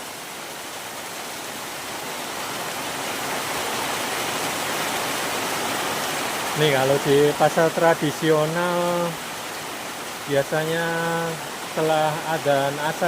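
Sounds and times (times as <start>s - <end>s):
rain falling steadily: 0.0s - 13.0s.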